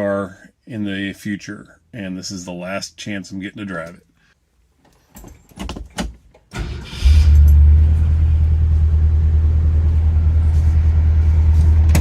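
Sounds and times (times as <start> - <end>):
car engine cranking and idling: 6.4 - 12.0.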